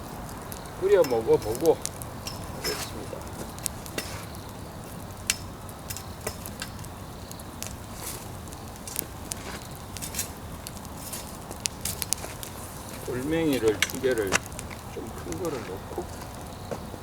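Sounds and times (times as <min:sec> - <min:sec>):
sharp pops of fire: 0:00.0 - 0:17.0
steady low rush: 0:00.0 - 0:17.0
wood fire crackling: 0:00.0 - 0:17.0.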